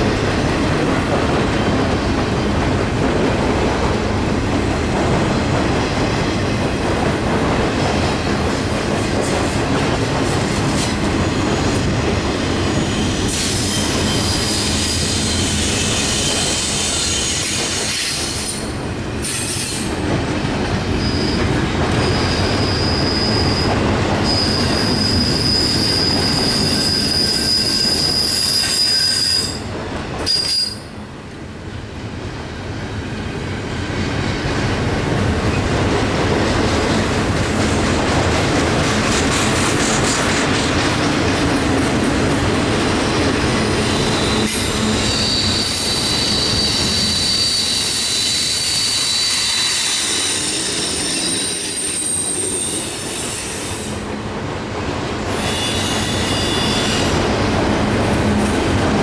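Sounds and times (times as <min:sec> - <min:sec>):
wheel flange squeal: 0:12.4 - 0:18.6, 0:21.0 - 0:29.7, 0:30.3 - 0:30.9, 0:42.6 - 0:54.0, 0:55.3 - 0:57.2.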